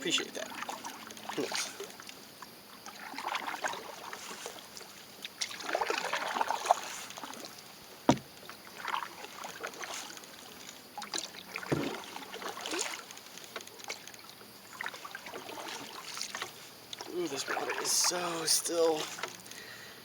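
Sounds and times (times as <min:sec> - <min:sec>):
paddle swishing through water: 0:00.0 - 0:19.8
dull knock: 0:08.1 - 0:08.3.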